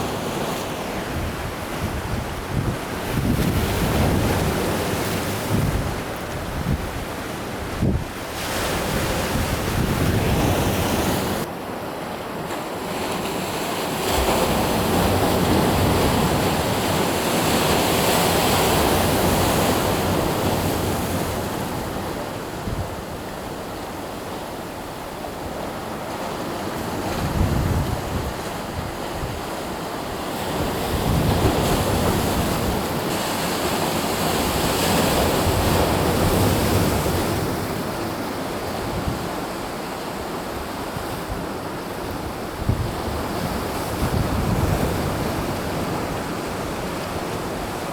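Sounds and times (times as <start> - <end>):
sea waves breaking on shore: 0.0 - 47.9
wind buffeting microphone: 1.0 - 11.5, 27.0 - 29.6, 30.5 - 33.1, 40.6 - 47.8.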